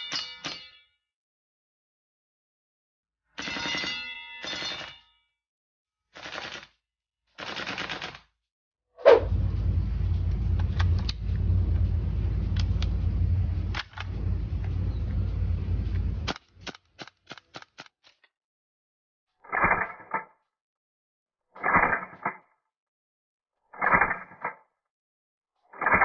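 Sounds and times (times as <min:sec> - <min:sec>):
airsoft rifle automatic fire: 0:06.2 - 0:06.8, 0:07.4 - 0:08.2.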